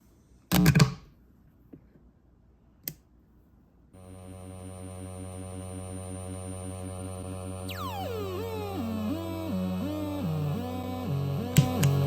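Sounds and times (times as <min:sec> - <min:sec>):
electronic buzzing drone with warble: 0:04.0 - 0:12.0
thin high whine: 0:04.0 - 0:12.0.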